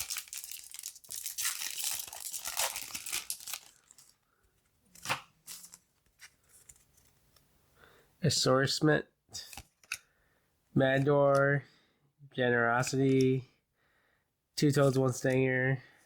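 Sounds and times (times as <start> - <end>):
foil wrapper tearing and crinkling: 0.0 - 4.1.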